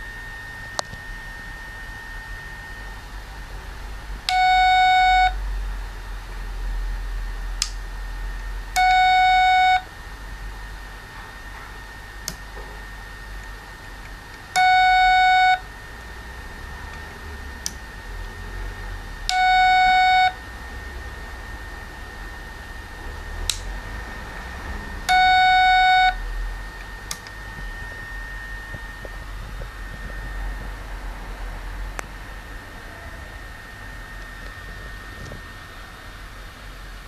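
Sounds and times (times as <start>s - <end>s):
faint steady high tone: 14.5s - 15.9s, 19.2s - 21.1s, 32.4s - 35.0s
electronic beeps: 14.6s - 15.7s, 19.3s - 20.4s, 25.1s - 26.3s.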